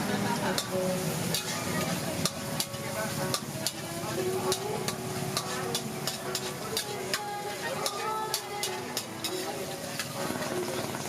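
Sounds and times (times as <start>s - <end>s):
food sizzling in hot oil: 0.0s - 11.0s
metal spatula scraping a wok: 0.0s - 11.0s.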